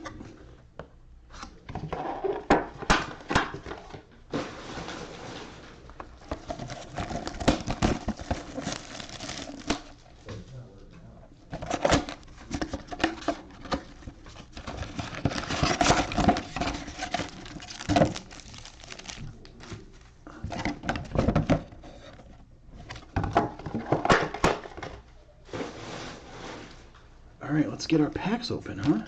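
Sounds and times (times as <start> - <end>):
cardboard boxes handled: 6.1 - 9.8, 11.6 - 22.3
foil card packs crinkling: 6.2 - 10.0, 13.9 - 20.2.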